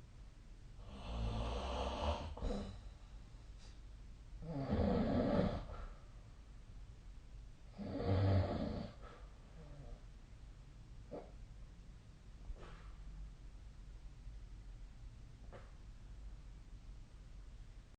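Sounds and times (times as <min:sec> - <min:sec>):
person snoring: 0:00.8 - 0:02.8, 0:04.4 - 0:05.8, 0:07.7 - 0:10.0.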